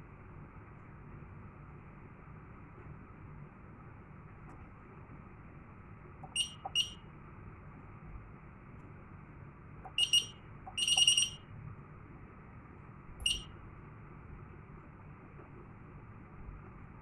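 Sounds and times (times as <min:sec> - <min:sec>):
fire alarm panel buzzer beeps: 0:06.2 - 0:07.0, 0:09.9 - 0:11.4, 0:13.2 - 0:13.5.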